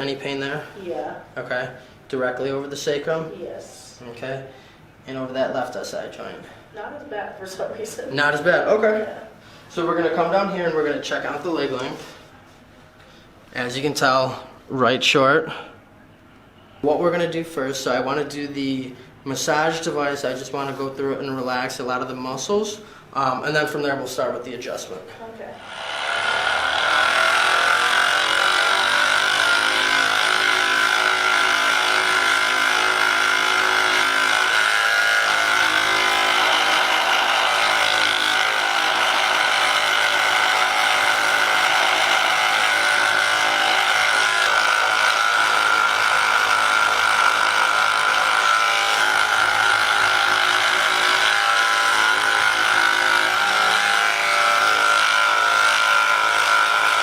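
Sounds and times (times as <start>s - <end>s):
electric massager motor humming: 25.6s - 57.0s.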